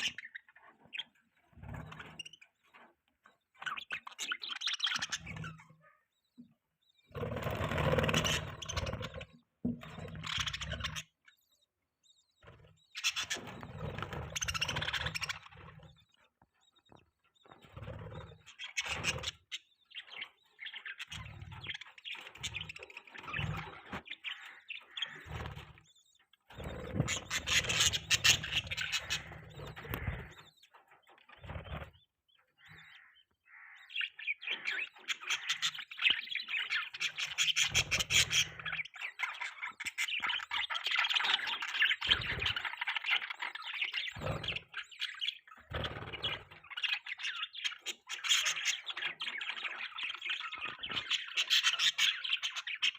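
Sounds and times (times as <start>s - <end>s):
budgerigar chirping: 25.9s - 30.7s, 32.6s - 52.9s.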